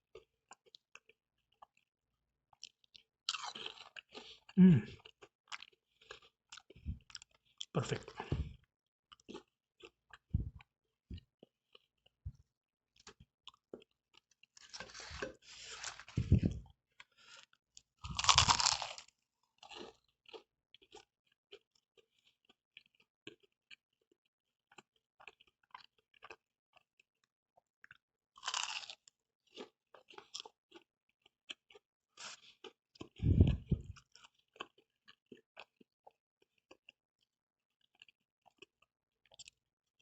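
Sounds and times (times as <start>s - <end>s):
crunchy bites: 3.3s - 4.0s, 18.0s - 20.0s, 28.4s - 29.0s.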